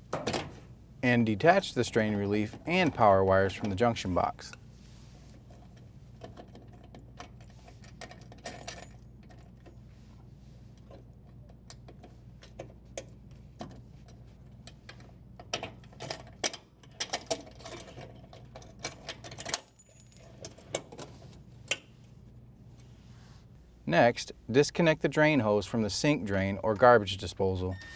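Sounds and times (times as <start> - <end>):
cable clicks and rattles: 10.8 - 21.9.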